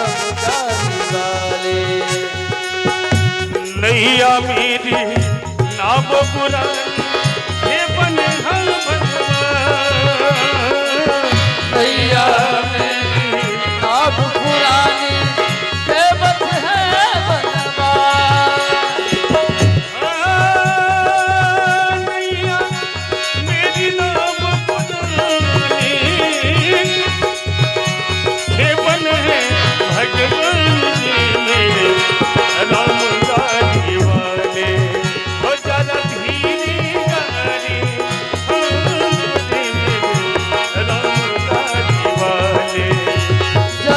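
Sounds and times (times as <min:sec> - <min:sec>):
reed organ drone: 0:00.0 - 0:03.8
person singing: 0:00.0 - 0:05.0.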